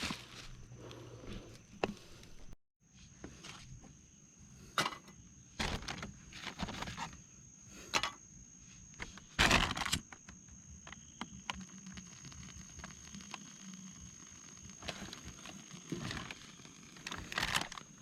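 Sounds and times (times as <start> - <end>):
dry leaves rustling and crunching: 0.0 - 0.7
high insect drone: 3.4 - 18.0.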